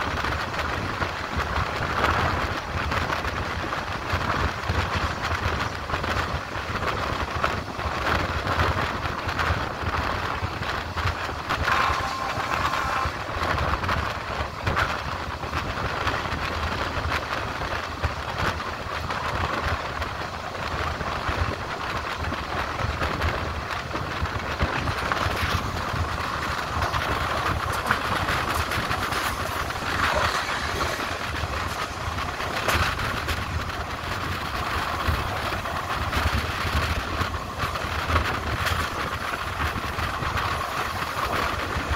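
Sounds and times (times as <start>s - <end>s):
train wheels rumbling on track: 0.0s - 41.9s
brief steady tone: 11.6s - 13.4s.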